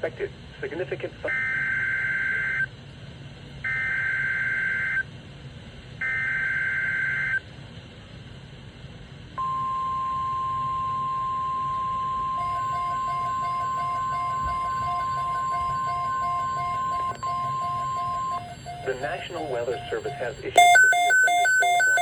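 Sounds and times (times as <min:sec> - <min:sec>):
pulsing alarm beep: 0:01.3 - 0:02.7, 0:03.7 - 0:05.0, 0:06.0 - 0:07.4, 0:09.4 - 0:22.0
steady warning alarm tone: 0:01.3 - 0:02.7, 0:03.7 - 0:05.0, 0:06.0 - 0:07.4, 0:09.4 - 0:22.0
two-pitched data tone bursts: 0:01.3 - 0:02.7, 0:03.7 - 0:05.0, 0:06.0 - 0:07.4, 0:09.4 - 0:22.0.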